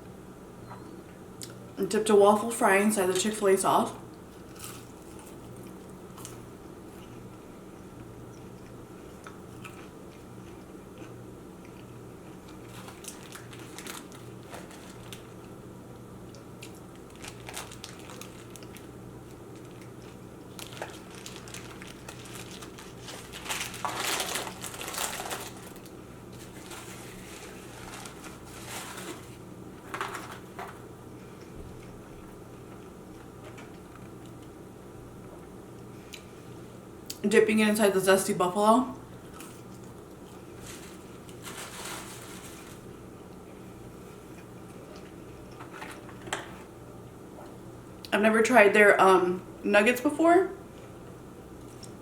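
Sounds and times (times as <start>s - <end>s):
steady low hum: 0.0s - 52.0s
person chewing food: 4.2s - 14.4s
packaging crinkling: 12.5s - 15.6s, 16.6s - 30.8s, 40.5s - 43.0s.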